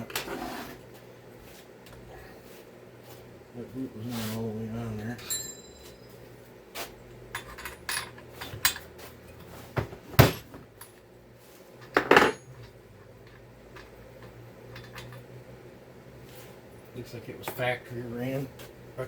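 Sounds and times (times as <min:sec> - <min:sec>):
metal tools clinking and clattering: 0:05.2 - 0:06.2, 0:07.3 - 0:08.9, 0:11.8 - 0:15.2.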